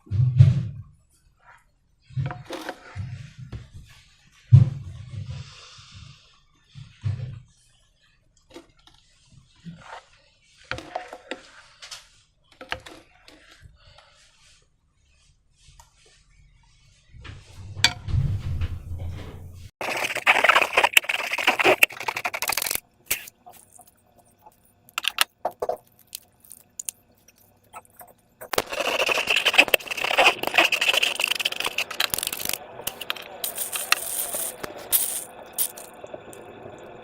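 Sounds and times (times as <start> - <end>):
slime crackling and squishing: 19.8 - 34.9.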